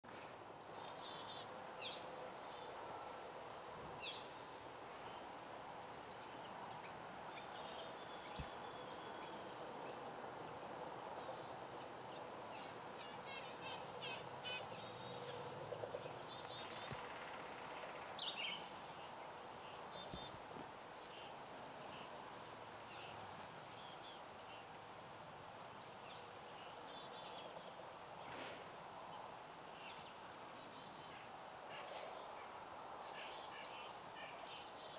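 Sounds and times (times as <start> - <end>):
faint outdoor background: 0.0 - 34.9
birds chirping and trilling: 3.5 - 24.7.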